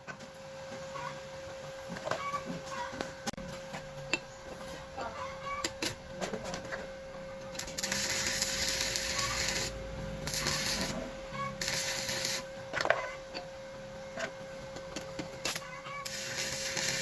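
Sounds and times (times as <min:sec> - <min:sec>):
welding arc crackling and hissing: 0:07.4 - 0:12.7, 0:15.2 - 0:17.0.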